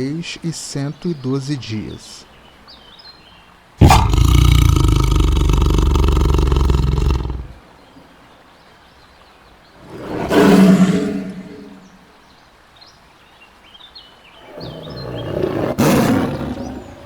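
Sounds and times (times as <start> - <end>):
tiger roaring: 3.8 - 7.6, 9.8 - 11.9, 14.4 - 17.0.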